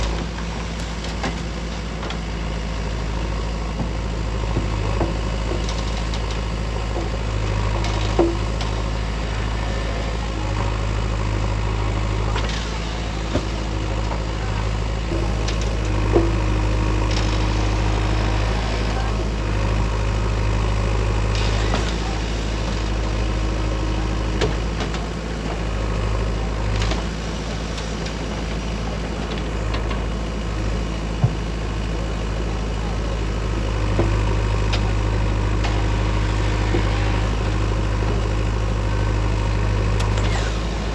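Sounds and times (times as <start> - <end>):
diesel engine running: 0.0 - 40.9
knocks and clanks: 3.7 - 8.9, 31.1 - 31.6.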